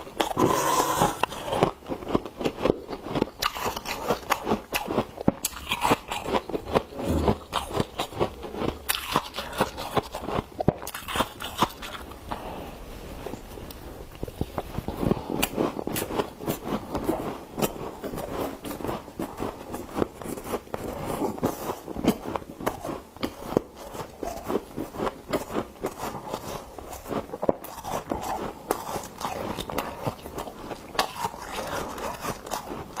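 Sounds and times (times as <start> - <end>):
frost being scraped: 0.0 - 1.7.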